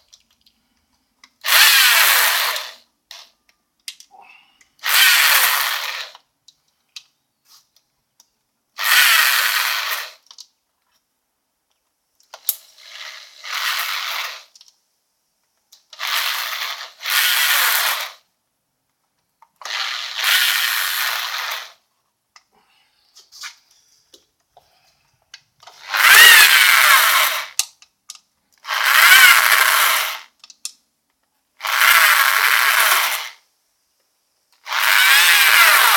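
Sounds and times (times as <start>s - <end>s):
cordless drill spinning: 1.4s - 2.9s, 4.8s - 6.2s, 8.8s - 10.3s, 12.6s - 14.6s, 16.0s - 18.2s, 19.6s - 21.8s, 25.6s - 27.6s, 28.6s - 30.4s, 31.6s - 33.4s, 34.6s - 35.9s.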